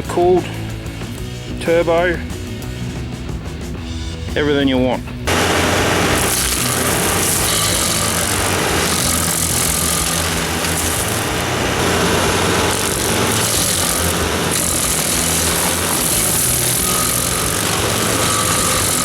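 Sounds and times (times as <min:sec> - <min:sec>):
cutter wheel grinding stump: 0:05.3 - 0:19.0
diesel engine droning: 0:05.3 - 0:19.0.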